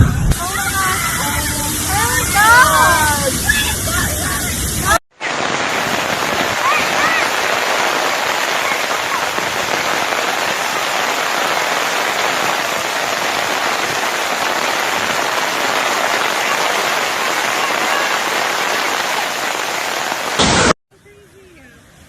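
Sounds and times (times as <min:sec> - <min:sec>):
rushing flood water and rain: 0:00.2 - 0:20.8.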